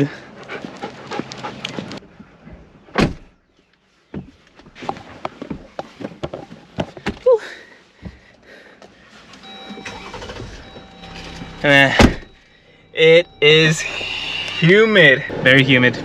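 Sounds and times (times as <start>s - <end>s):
car door shutting: 9.5s - 12.4s
knocks and rattles in vehicle: 10.7s - 12.4s.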